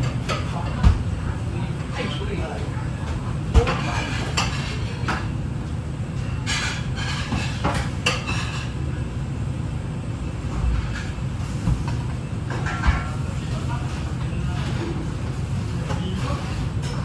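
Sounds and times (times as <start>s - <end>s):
plates and utensils clinking: 3.6s - 5.3s, 6.2s - 8.8s, 10.8s - 17.0s.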